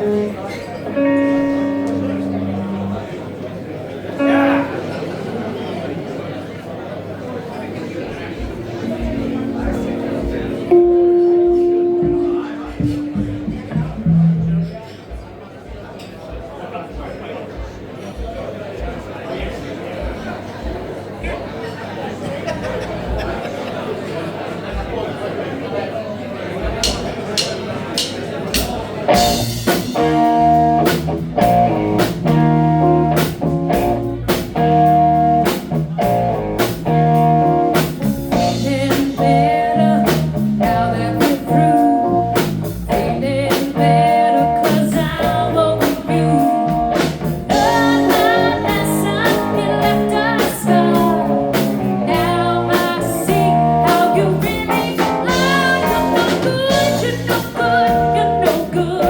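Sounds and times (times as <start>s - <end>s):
guitar: 0.0s - 5.3s, 8.2s - 15.2s, 28.0s - 59.0s
drum kit steady beat: 8.4s - 15.8s, 26.7s - 59.0s
person singing: 8.8s - 14.6s, 38.4s - 42.2s, 42.9s - 59.0s.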